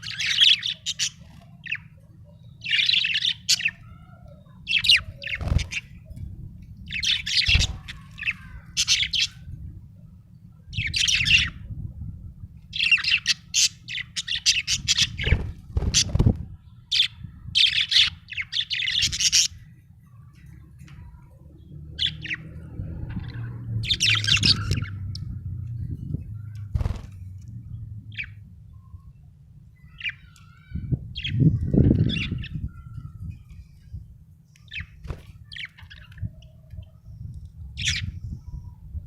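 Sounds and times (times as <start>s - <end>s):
budgerigar chirping and chattering: 6.9s - 9.4s, 12.8s - 15.4s, 16.9s - 19.6s, 23.8s - 25.0s.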